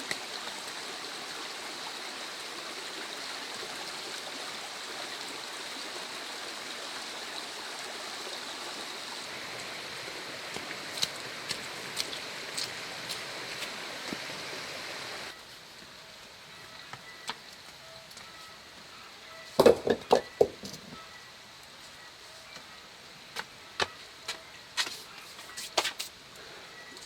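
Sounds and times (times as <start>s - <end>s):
running water rushing: 0.0s - 15.4s
loud knocks: 19.6s - 20.7s.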